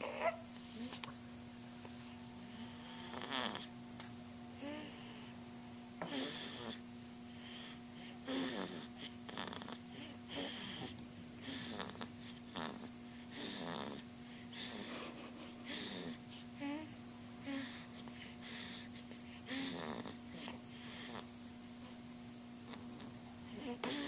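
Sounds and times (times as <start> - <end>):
steady low hum: 0.0 - 24.0
person snoring: 19.5 - 20.2.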